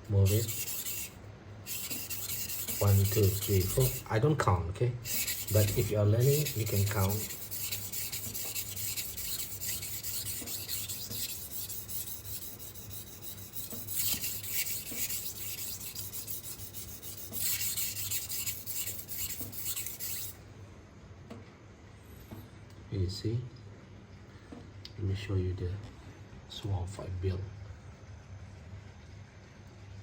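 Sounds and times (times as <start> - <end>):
knife scraping on whetstone: 0.2 - 4.1, 5.1 - 20.4.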